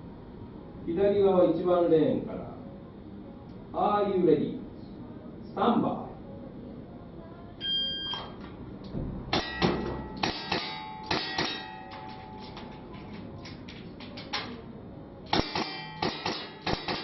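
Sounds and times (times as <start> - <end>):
shot timer beep: 7.6 - 8.4.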